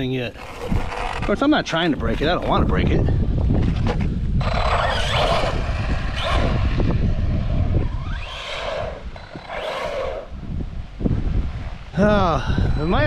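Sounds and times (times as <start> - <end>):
wind buffeting microphone: 0.0 - 13.0
toy truck motor whirring: 0.2 - 1.6, 3.6 - 10.3
rising whine: 4.4 - 10.4.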